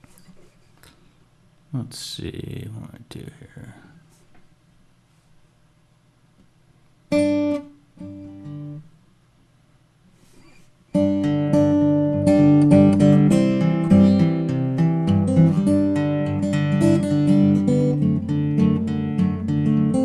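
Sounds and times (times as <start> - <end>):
acoustic guitar strumming: 7.1 - 8.9, 10.9 - 20.0.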